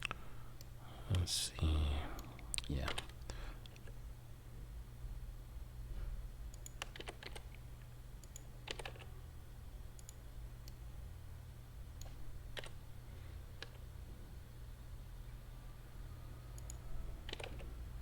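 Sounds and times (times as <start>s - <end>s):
low electrical hum: 0.0s - 18.0s
mouse and keyboard clicks: 6.5s - 7.6s, 16.6s - 17.7s.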